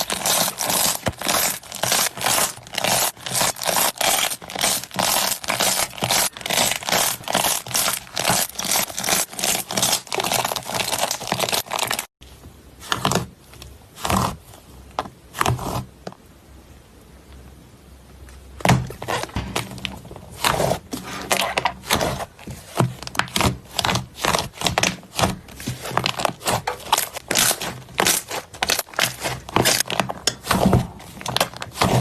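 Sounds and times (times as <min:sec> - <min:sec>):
slime squishing and crackling: 0:00.0 - 0:12.1, 0:18.9 - 0:32.0.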